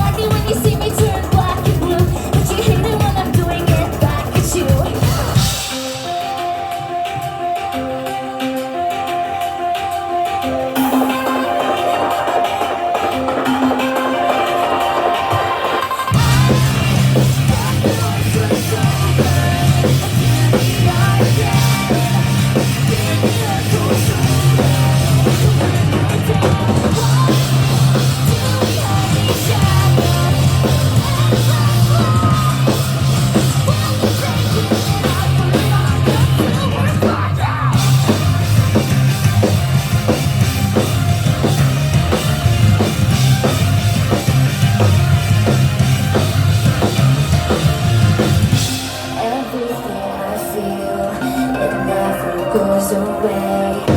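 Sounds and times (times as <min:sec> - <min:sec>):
distorted guitars: 0:00.0 - 0:53.9
drum kit: 0:00.0 - 0:53.9
heavy bass line: 0:16.1 - 0:50.1.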